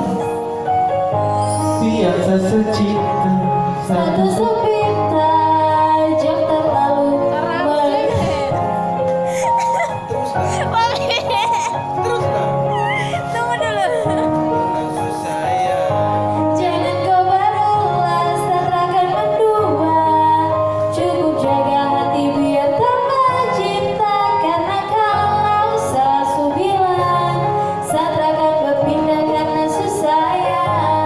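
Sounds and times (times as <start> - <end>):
instrumental backing music: 0.0 - 31.0
woman singing pop song: 3.9 - 8.8, 16.5 - 31.0.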